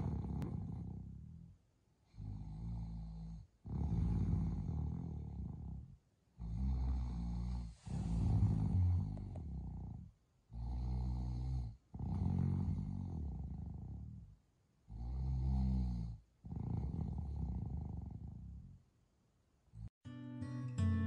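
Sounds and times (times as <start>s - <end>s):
person snoring: 0.0s - 1.4s, 2.1s - 14.3s, 14.9s - 18.6s.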